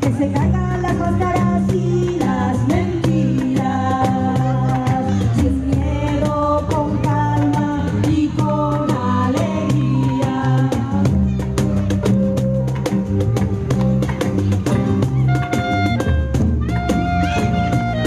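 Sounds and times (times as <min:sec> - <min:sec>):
person singing: 0:00.0 - 0:11.5
folk band music: 0:00.0 - 0:18.0
percussion beat: 0:00.0 - 0:18.0.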